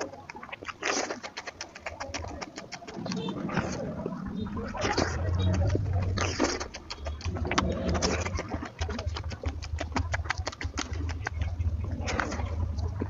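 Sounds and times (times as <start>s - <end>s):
wet chewing and lip-smacking: 0.0s - 13.0s
low hum: 3.0s - 13.0s.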